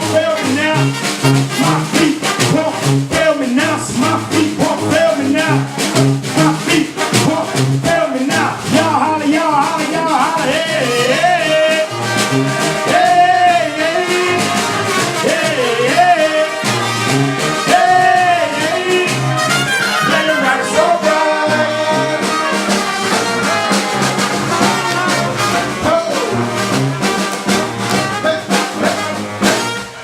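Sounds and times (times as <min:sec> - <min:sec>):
steady drum beat: 0:00.0 - 0:30.0
low bass line: 0:02.5 - 0:11.4
horn lines sliding: 0:10.7 - 0:28.2.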